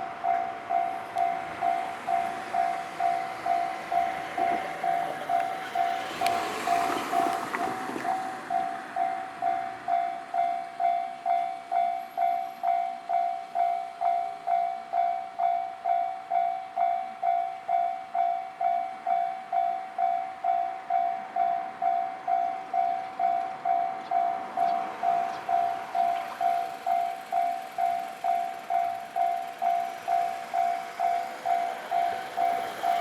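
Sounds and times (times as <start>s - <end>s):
level crossing alarm ringing: 0.0s - 33.0s.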